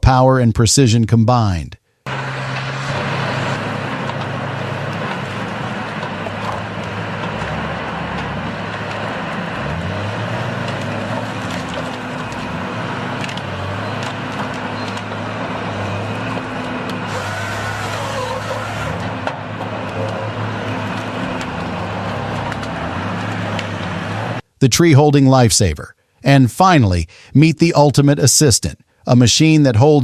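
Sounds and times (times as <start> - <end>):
heavy machinery engine running: 2.1 - 24.4.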